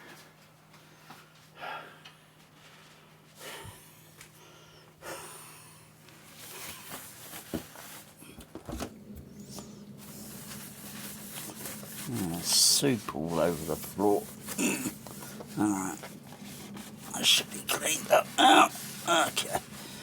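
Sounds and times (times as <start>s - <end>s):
faint rustles and clicks: 6.0s - 20.0s
cloth wiping floor: 9.2s - 20.0s.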